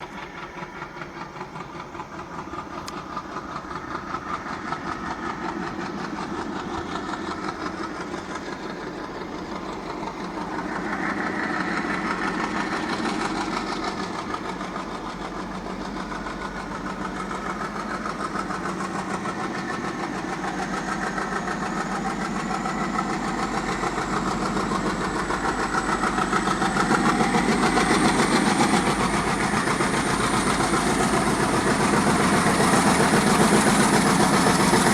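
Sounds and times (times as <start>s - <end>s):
diesel locomotives running: 0.0s - 34.9s.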